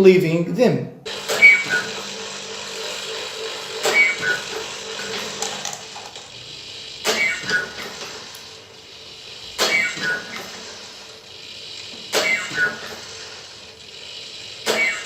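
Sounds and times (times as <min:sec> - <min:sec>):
motor hum: 0:01.0 - 0:15.0.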